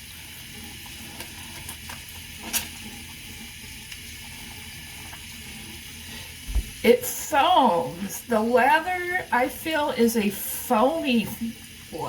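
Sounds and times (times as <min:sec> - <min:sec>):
water running from a tap: 0:00.0 - 0:12.0
hands lathering soap: 0:00.1 - 0:06.9.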